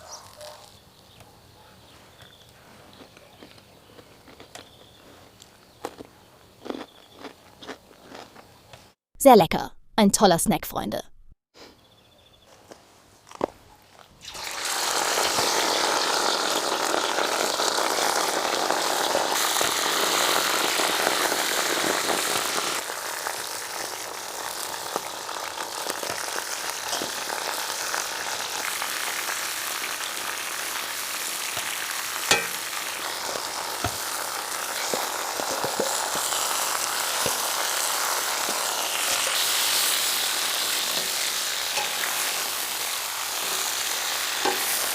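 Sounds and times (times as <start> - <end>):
food sizzling in hot fat: 14.2 - 44.9.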